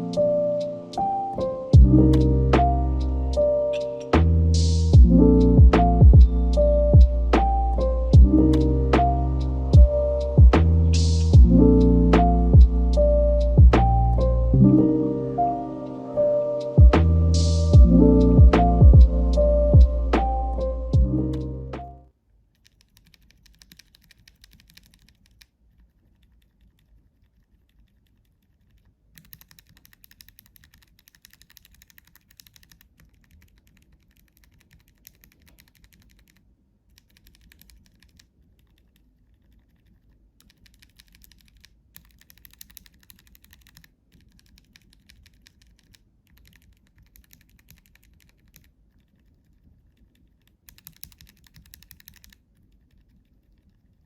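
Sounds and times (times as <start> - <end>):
mechanical keyboard key clacks: 29.2 - 39.8, 40.4 - 49.3, 50.6 - 53.8.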